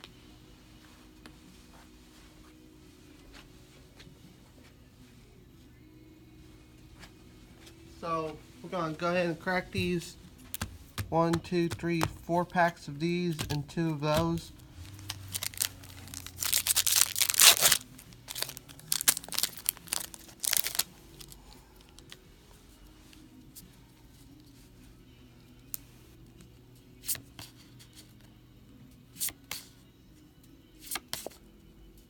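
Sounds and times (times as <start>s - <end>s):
wrapper crinkling: 14.2s - 22.2s
foil wrapper tearing: 14.8s - 21.4s.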